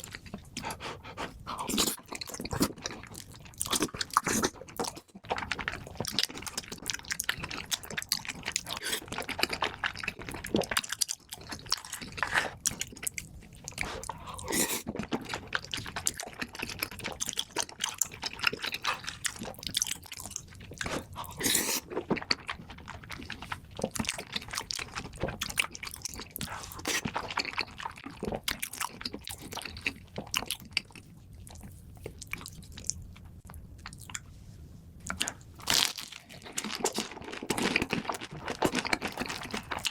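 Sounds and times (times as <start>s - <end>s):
crunchy food chewing: 0.0s - 34.3s, 35.0s - 39.9s.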